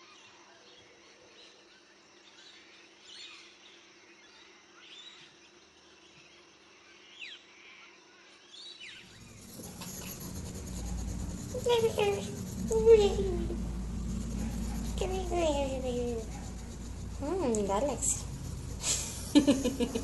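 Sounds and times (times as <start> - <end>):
steady low hum: 9.0 - 20.0
loud rumble: 9.1 - 20.0.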